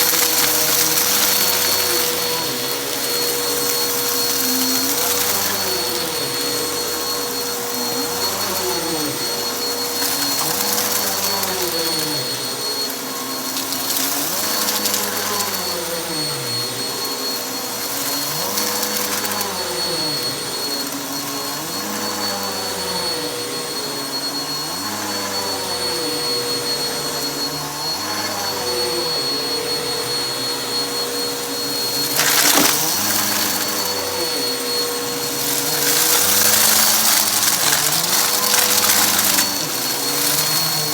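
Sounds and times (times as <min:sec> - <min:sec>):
debris rattling in vacuum: 0:00.0 - 0:22.2, 0:31.1 - 0:40.9
vacuum cleaner on carpet: 0:00.0 - 0:40.9.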